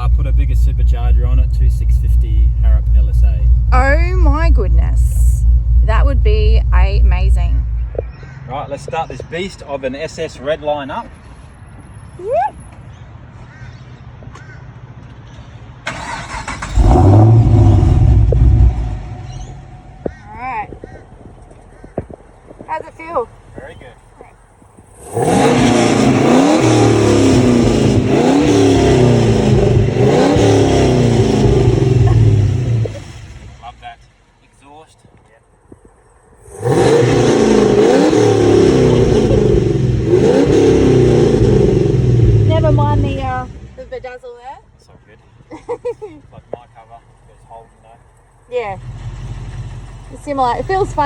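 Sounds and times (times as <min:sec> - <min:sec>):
engine revving and idling: 0:00.0 - 0:08.1, 0:15.9 - 0:21.5, 0:24.8 - 0:34.0, 0:36.4 - 0:44.2.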